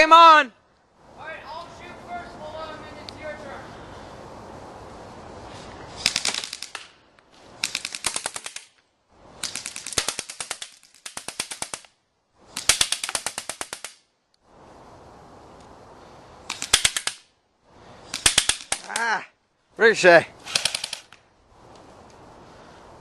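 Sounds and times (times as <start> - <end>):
airsoft guns firing full-auto: 6.0 - 6.9, 7.6 - 8.7, 9.4 - 11.9, 20.5 - 21.1.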